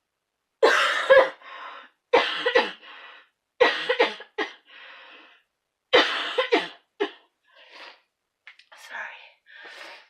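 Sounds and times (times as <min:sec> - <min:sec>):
woman coughing: 0:00.6 - 0:01.4, 0:03.6 - 0:04.6
drawn-in breath: 0:09.5 - 0:10.0.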